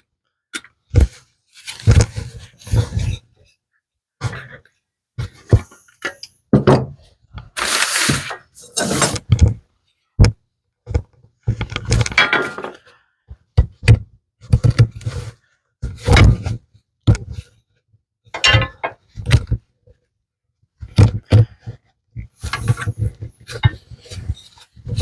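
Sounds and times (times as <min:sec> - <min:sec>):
wood thunks and knocks: 0:06.5 - 0:07.0
wooden parts clattering scrapes: 0:06.6 - 0:09.4, 0:11.7 - 0:12.9.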